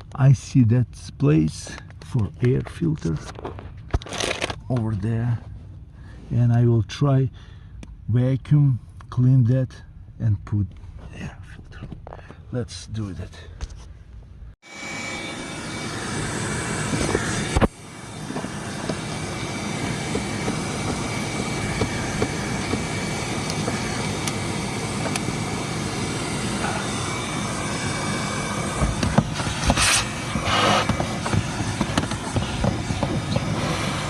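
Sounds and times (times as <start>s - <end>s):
vacuum cleaner running: 14.6s - 34.0s.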